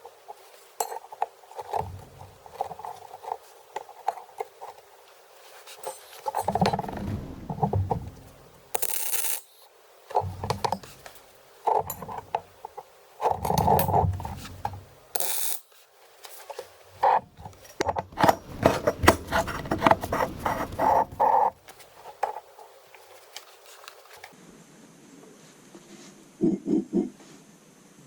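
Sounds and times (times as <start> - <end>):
workshop clatter: 1.8 - 3.0, 13.5 - 15.0, 17.0 - 21.8.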